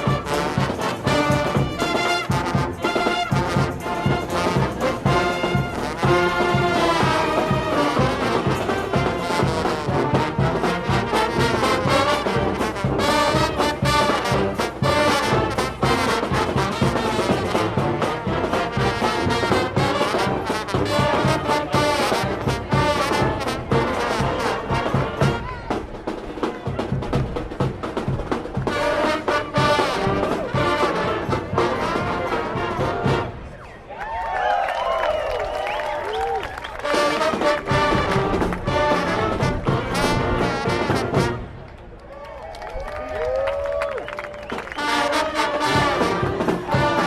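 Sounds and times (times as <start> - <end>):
brass music: 0.0 - 33.6, 36.6 - 41.8, 44.2 - 47.0.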